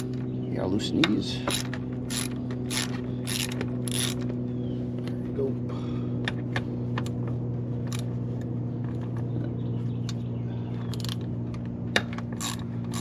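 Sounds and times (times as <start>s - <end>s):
steady low hum: 0.0s - 13.0s
hand tools clicking on metal: 1.0s - 4.3s, 10.9s - 13.0s.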